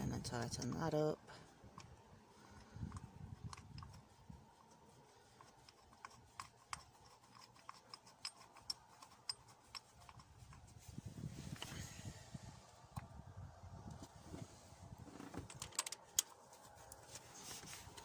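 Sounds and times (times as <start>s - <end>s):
hand tools clicking: 5.4s - 10.6s.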